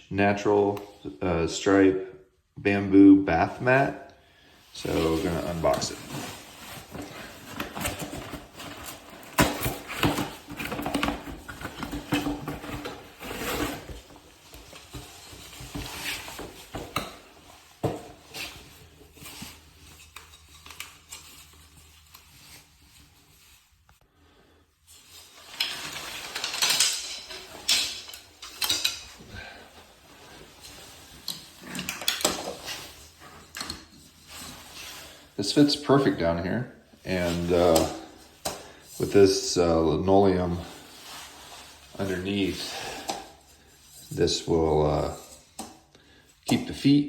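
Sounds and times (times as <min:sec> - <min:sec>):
wooden slats clattering: 0:25.6 - 0:29.1.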